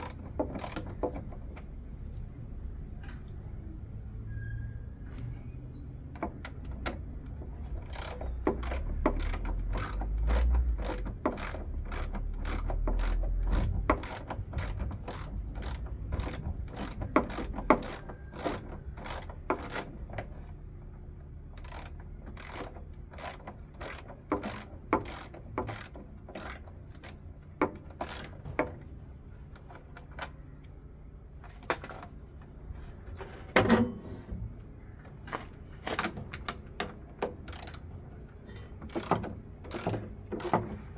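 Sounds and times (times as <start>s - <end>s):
ratcheting clicks of hand tools: 0.0s - 1.7s, 6.1s - 20.6s, 21.4s - 30.4s, 35.9s - 40.9s.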